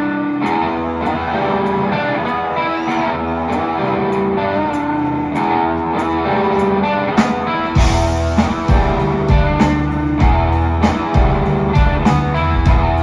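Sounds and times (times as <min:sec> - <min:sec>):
electric guitar chords: 0:00.0 - 0:13.0
live rock band playing: 0:00.0 - 0:13.0.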